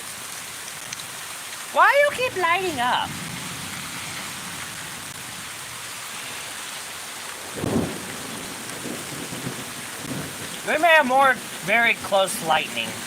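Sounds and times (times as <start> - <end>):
steady rain falling: 0.0 - 13.0
loud low thunder burst: 7.5 - 10.5.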